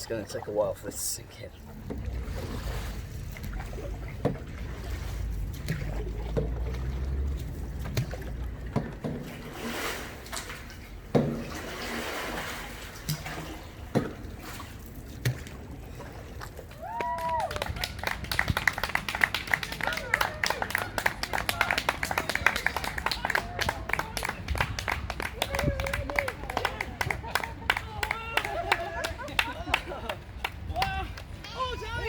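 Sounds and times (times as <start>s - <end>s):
paddle splashing in water: 1.6s - 31.8s
paddle knocks: 1.8s - 12.4s, 13.0s - 14.4s
wind on microphone: 17.0s - 19.2s, 21.9s - 32.0s.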